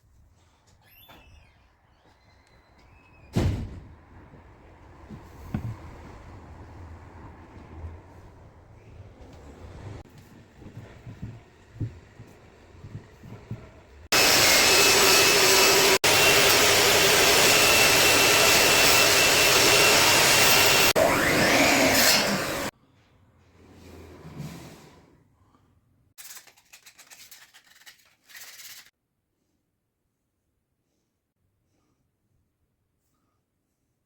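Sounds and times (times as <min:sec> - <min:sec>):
power tool running on wood: 0:14.1 - 0:22.7
quick scratching strokes: 0:26.2 - 0:28.9.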